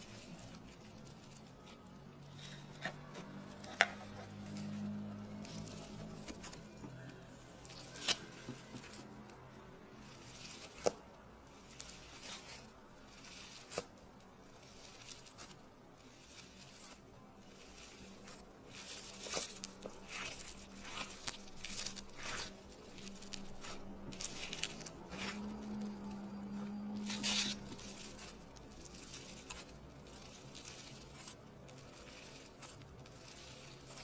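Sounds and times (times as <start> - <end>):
slime crackling and popping: 10.0 - 34.0.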